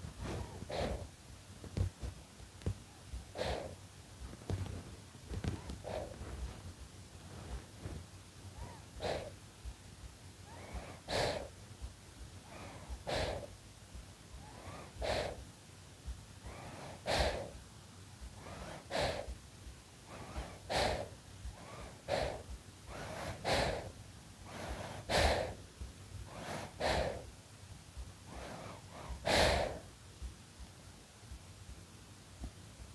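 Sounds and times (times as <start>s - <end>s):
baby breathing in sleep: 0.0s - 1.1s, 2.6s - 3.8s, 4.4s - 6.6s, 7.3s - 9.4s, 10.4s - 13.6s, 14.3s - 15.5s, 16.4s - 17.6s, 18.2s - 19.4s, 20.0s - 27.4s, 28.2s - 29.9s.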